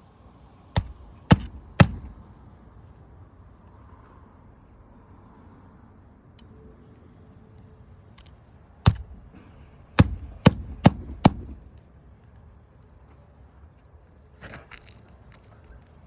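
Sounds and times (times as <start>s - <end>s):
hammer striking roofing nails: 0.8s - 2.3s, 8.9s - 9.3s, 10.0s - 11.7s.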